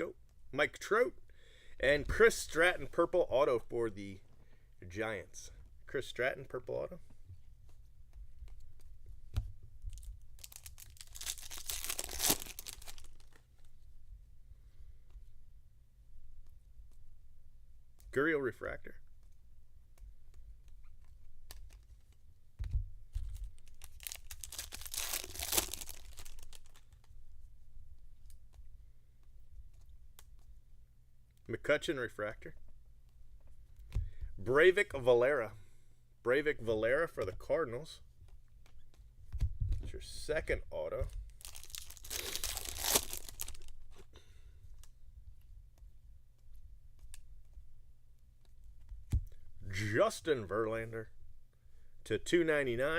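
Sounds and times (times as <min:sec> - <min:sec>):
wrapper tearing and crinkling: 0:09.9 - 0:13.4, 0:23.2 - 0:27.0, 0:41.3 - 0:43.9.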